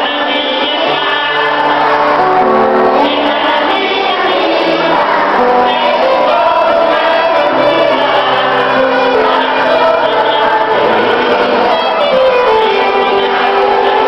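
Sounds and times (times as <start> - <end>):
choir singing: 0.0 - 14.0
instrumental accompaniment: 0.0 - 14.0.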